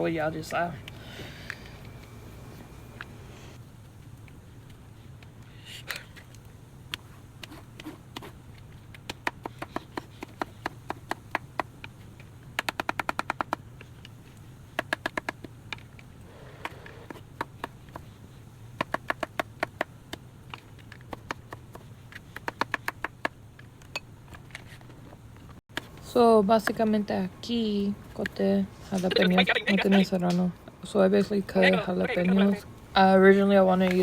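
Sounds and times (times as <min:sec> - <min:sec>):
knife chopping vegetables: 0:09.0 - 0:11.9.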